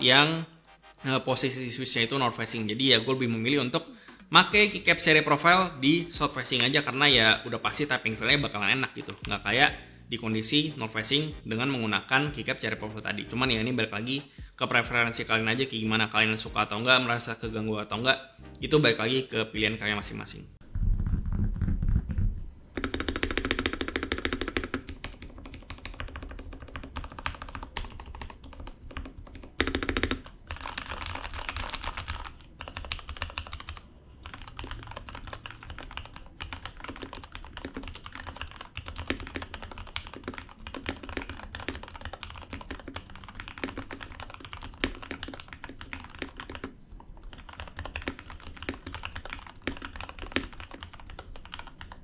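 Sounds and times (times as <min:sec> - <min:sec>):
mechanical keyboard typing: 0:08.5 - 0:09.5, 0:22.7 - 0:52.0.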